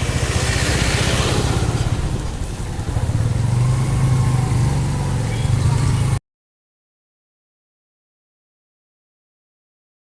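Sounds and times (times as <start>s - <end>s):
vehicle engine humming: 0.0s - 6.2s.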